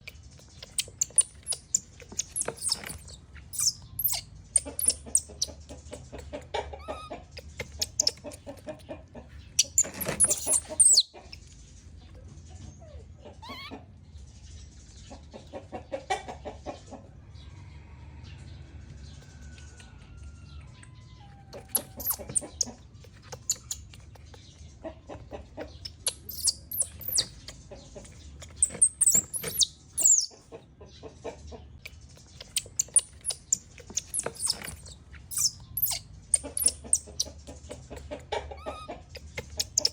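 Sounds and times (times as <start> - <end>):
baby monkey squealing: 0.5 - 8.8, 9.6 - 11.2, 12.8 - 13.9, 21.2 - 24.2, 25.6 - 27.5, 28.1 - 30.4, 32.3 - 39.9.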